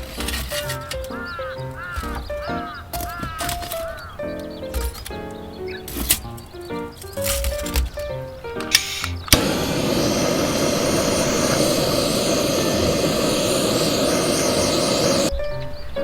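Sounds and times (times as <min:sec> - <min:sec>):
loud rushing roar: 0:09.4 - 0:15.3.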